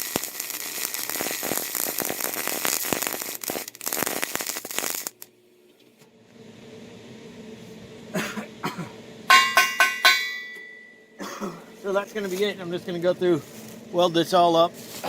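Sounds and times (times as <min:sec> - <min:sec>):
welder arc crackling: 0:00.0 - 0:05.4.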